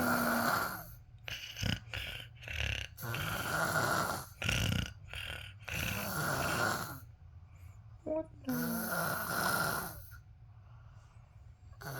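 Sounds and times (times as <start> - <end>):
person snoring: 0.0 - 0.9, 8.4 - 10.2.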